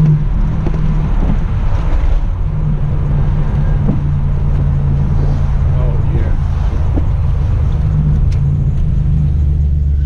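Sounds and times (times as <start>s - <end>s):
car engine drone: 0.0s - 10.0s
road and wind rumble: 0.0s - 10.0s.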